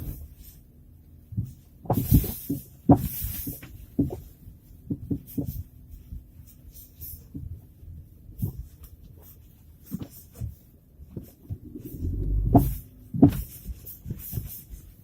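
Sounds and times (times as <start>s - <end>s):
dull suspension knocks: 9.9s - 14.6s.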